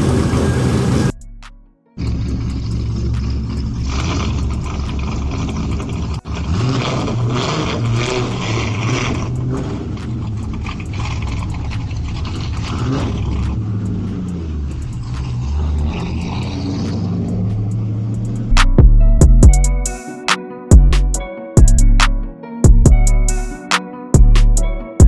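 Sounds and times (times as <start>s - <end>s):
car engine running: 2.0s - 19.8s.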